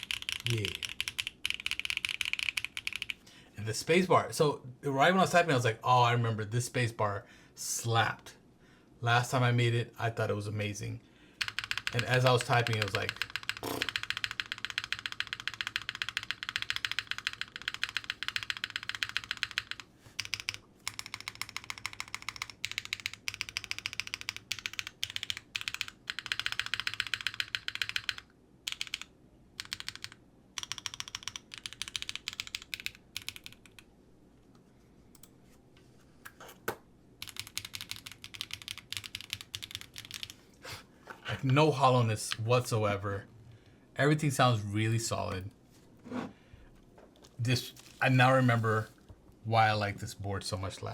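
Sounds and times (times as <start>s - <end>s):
mechanical keyboard typing: 0.0s - 3.2s, 11.4s - 33.9s, 37.2s - 40.4s.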